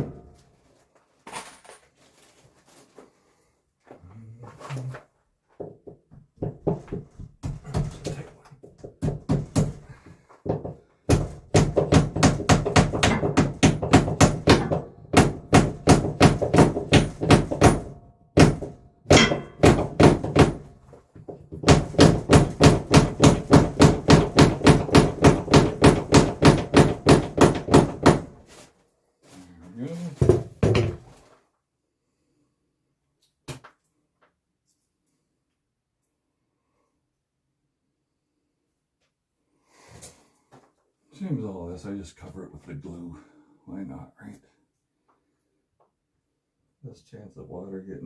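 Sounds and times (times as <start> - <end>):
rapid hammering: 8.8 - 9.9, 10.5 - 20.7, 21.5 - 28.4.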